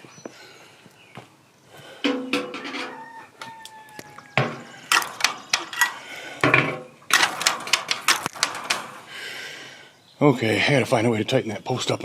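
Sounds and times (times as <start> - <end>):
sharp knocks and rattles: 2.0 - 3.0, 4.4 - 9.1
rooster crowing: 2.4 - 5.0.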